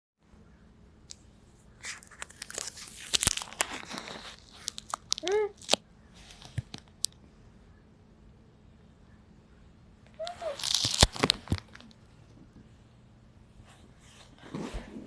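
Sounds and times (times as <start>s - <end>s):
crinkling handling noise: 1.1s - 7.2s, 10.1s - 12.8s.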